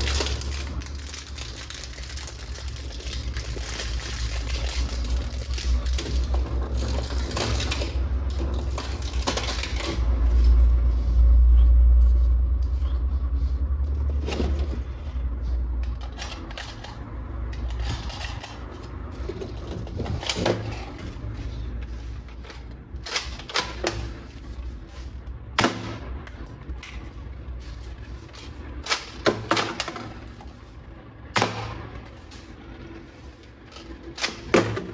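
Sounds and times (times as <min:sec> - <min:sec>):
plastic pieces clicking and knocking: 0:00.0 - 0:10.1, 0:15.9 - 0:20.9
low handling rumble: 0:00.0 - 0:23.1.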